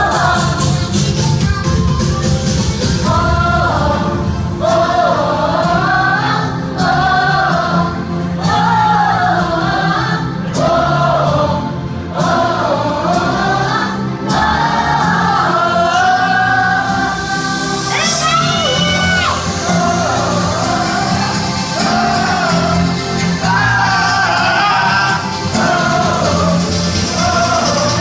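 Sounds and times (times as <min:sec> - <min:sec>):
electronic dance music: 0:00.0 - 0:08.9, 0:12.4 - 0:28.0
steady bass: 0:00.0 - 0:28.0
person singing: 0:14.3 - 0:28.0.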